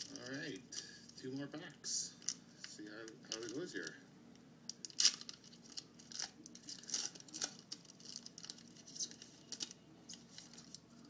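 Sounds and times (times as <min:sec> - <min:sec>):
wrapper tearing and crinkling: 0:04.8 - 0:10.8.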